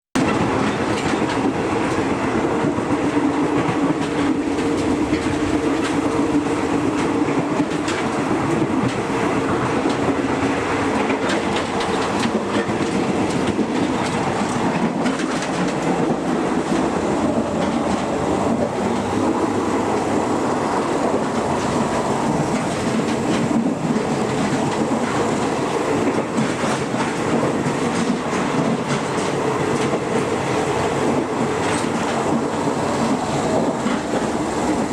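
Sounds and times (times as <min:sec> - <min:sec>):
train wheels rumbling on rails: 0:00.2 - 0:34.9
wheels clicking over track: 0:00.2 - 0:34.9.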